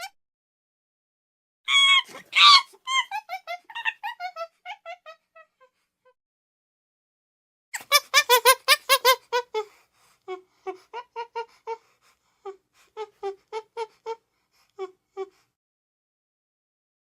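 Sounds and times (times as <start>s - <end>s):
creature high squeaky hoots: 1.7s - 5.0s.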